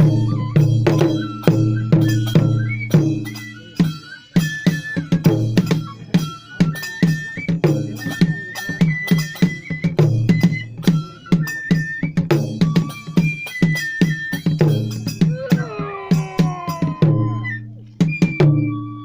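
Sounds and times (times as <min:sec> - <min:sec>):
high bamboo flute melody: 0:00.0 - 0:19.0
ringing drum strikes: 0:14.3 - 0:17.5.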